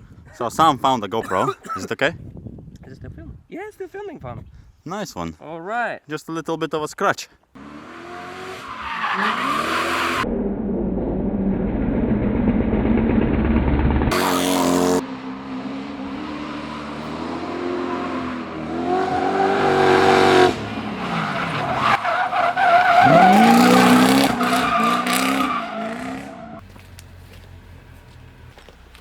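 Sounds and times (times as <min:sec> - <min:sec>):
car engine revving: 0:07.6 - 0:28.6
tyres squealing: 0:21.1 - 0:26.5.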